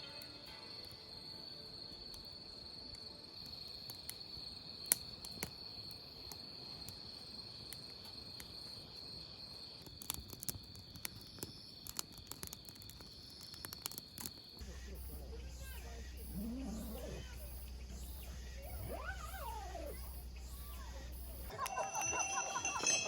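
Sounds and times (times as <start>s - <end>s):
crickets chirring: 0.0s - 23.0s
small clicks and taps: 9.8s - 14.5s.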